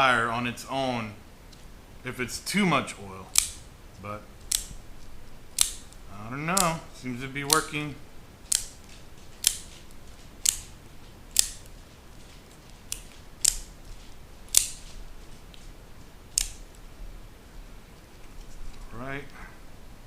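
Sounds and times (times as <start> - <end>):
knife blade snapping clicks: 14.5 - 14.8, 16.4 - 16.6.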